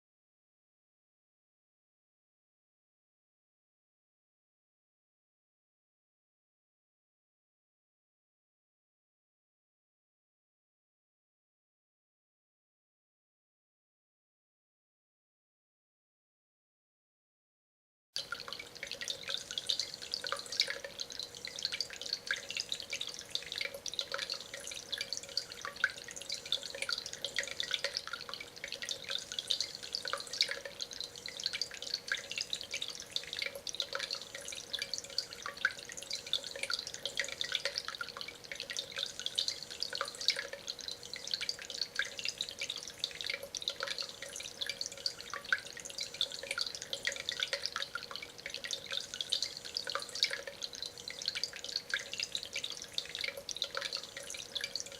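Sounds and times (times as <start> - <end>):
water trickling over stone: 18.2 - 54.9.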